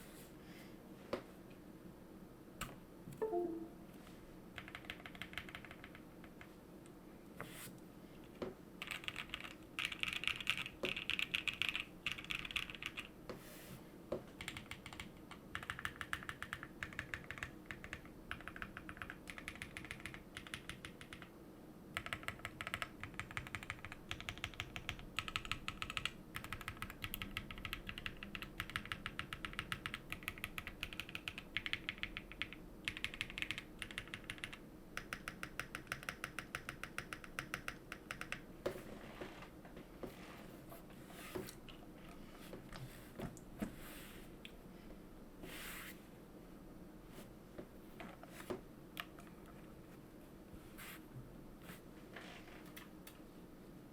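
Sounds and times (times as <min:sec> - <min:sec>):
typing on mechanical keyboard: 0:04.6 - 0:06.5, 0:08.8 - 0:13.1, 0:14.4 - 0:21.3, 0:22.0 - 0:38.5.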